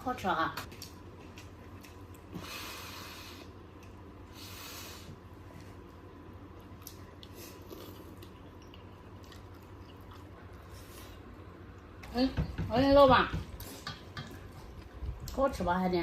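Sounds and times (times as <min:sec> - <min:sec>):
person chewing: 0:00.8 - 0:02.4, 0:06.5 - 0:11.9.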